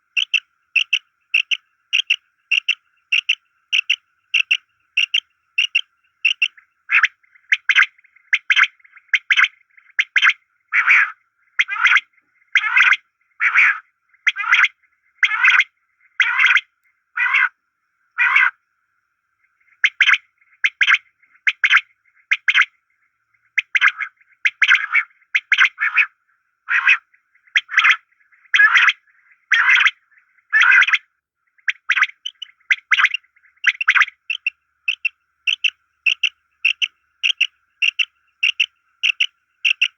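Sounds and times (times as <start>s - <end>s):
animals making rasping calls: 0.0s - 16.6s, 17.2s - 17.5s, 18.2s - 18.6s, 26.7s - 27.0s, 27.6s - 31.0s, 31.7s - 39.9s.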